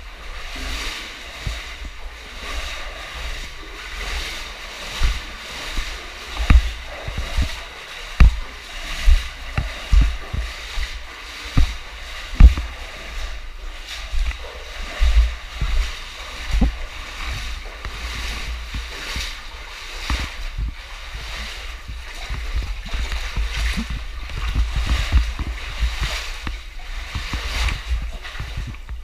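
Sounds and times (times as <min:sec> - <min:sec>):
water splashing and sloshing: 0:00.0 - 0:29.0
low thumps: 0:05.0 - 0:19.4.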